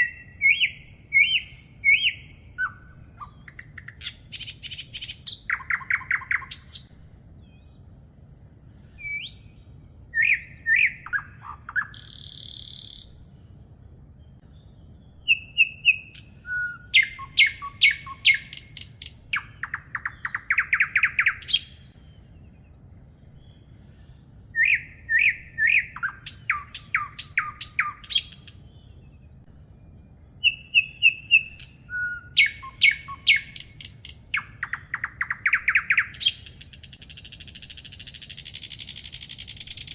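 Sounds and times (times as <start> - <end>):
birds singing chirps and trills: 0.0 - 39.9
faint low hum: 0.0 - 39.9.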